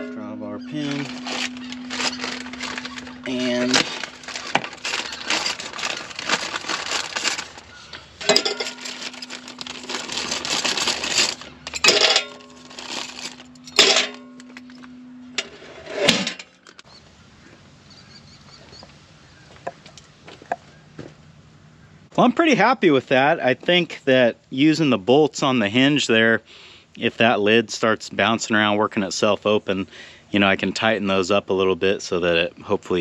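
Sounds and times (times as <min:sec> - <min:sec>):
hand tools clattering in toolbox: 0:08.2 - 0:10.2, 0:10.9 - 0:14.4.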